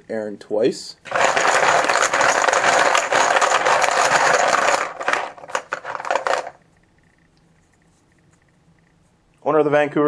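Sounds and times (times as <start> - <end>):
plastic chip clattering: 1.1 - 6.6
plastic chips rattling in container: 1.1 - 6.6.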